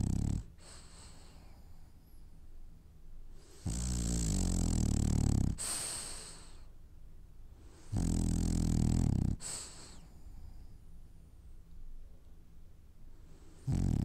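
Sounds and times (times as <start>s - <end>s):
dog snoring: 0.0s - 1.7s, 3.4s - 6.6s, 7.7s - 10.7s, 13.3s - 14.0s
dog hissing breath: 0.4s - 1.8s, 5.5s - 6.8s, 9.2s - 10.8s.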